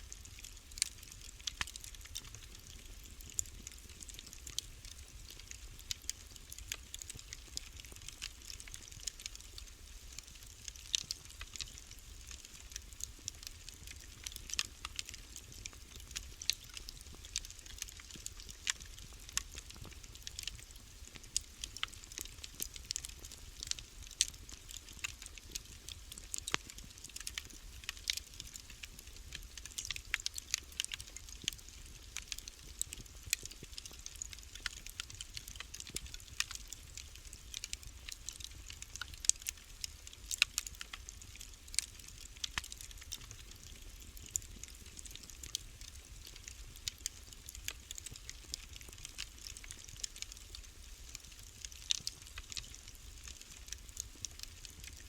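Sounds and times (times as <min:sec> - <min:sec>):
wood fire crackling: 0:00.1 - 0:55.0.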